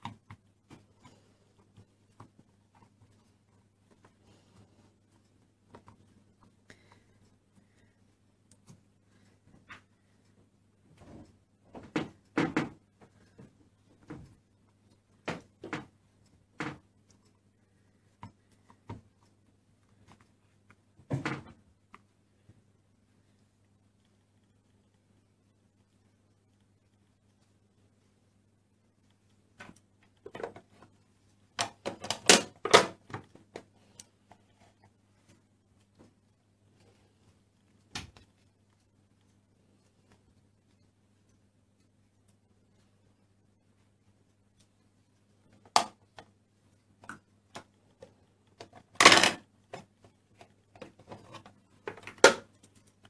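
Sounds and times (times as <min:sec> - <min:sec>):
plastic tools clicking and tapping: 0:29.6 - 0:34.9, 0:47.0 - 0:53.0.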